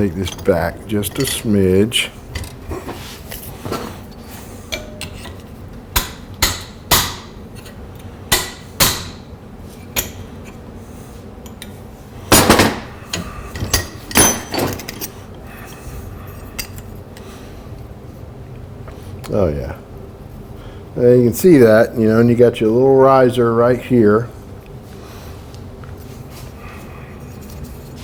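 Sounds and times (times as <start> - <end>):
hammer striking metal bracket: 6.0 - 7.4, 8.3 - 9.3, 12.3 - 13.2.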